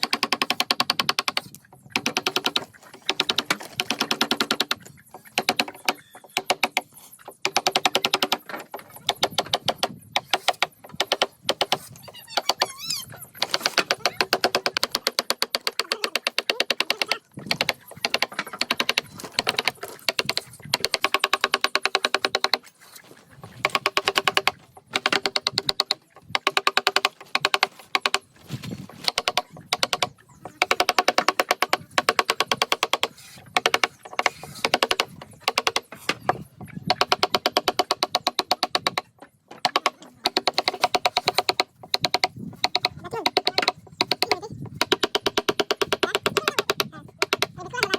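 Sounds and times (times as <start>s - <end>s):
hammer tapping on chisel: 23.6s - 28.2s, 29.0s - 47.9s.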